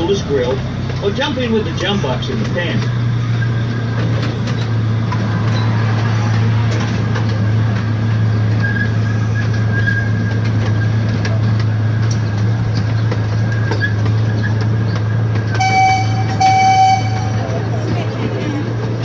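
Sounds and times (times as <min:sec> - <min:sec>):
ride train motor drone: 0:00.0 - 0:19.0
train cars clicking and rattling: 0:00.0 - 0:19.0.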